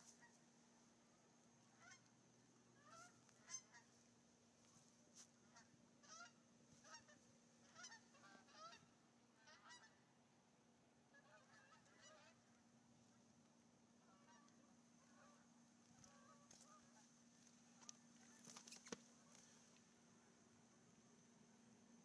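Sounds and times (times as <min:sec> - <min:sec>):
steady low hum: 0:00.0 - 0:22.0
honking bird calls: 0:01.7 - 0:02.1, 0:02.8 - 0:04.0, 0:05.5 - 0:10.0.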